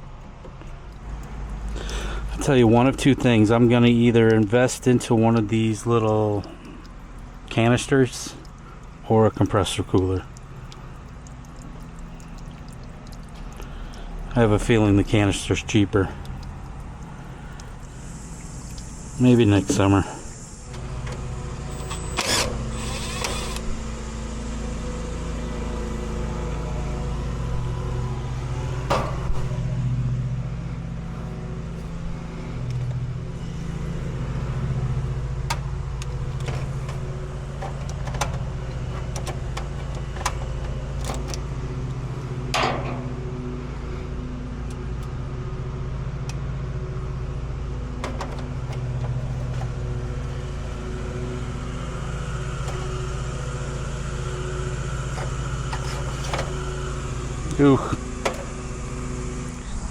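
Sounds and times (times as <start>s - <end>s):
low mechanical hum: 0.0s - 59.9s
sharp clicks or knocks: 28.9s - 29.5s.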